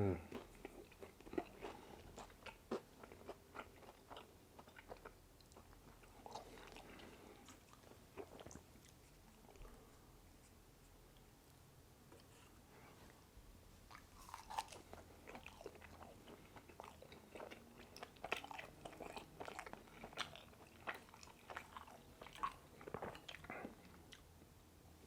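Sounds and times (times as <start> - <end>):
chewing with mouth clicks and crunches: 0.2 - 9.7, 13.9 - 24.4.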